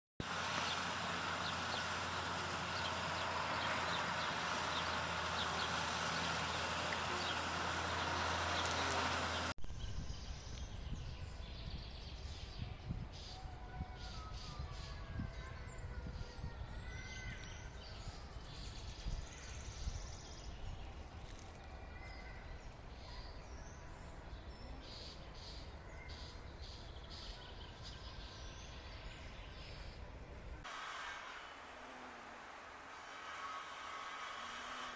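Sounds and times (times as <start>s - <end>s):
birds calling: 0.2s - 9.5s, 30.7s - 34.9s
dense hiss: 30.7s - 34.9s.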